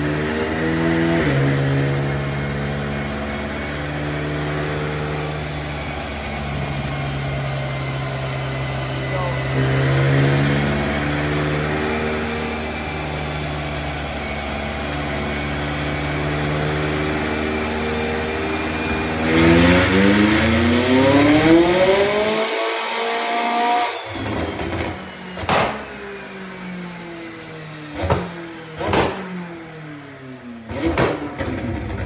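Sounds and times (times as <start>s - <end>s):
car engine revving: 0.0s - 32.0s
sharp exhaust pops: 28.0s - 29.4s, 30.8s - 32.0s.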